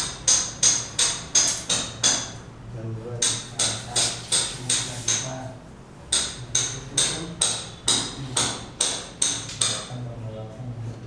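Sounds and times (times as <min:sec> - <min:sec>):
hammer striking metal: 0:00.0 - 0:02.4, 0:06.1 - 0:09.9.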